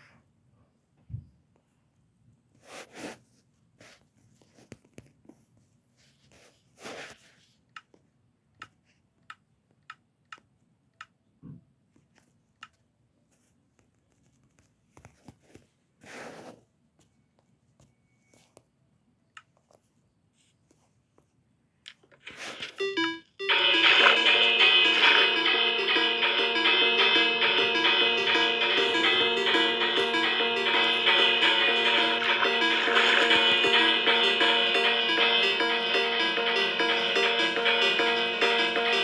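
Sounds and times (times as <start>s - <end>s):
faint rustling and handling: 1.6s - 8.1s, 13.2s - 18.8s, 19.5s - 22.8s.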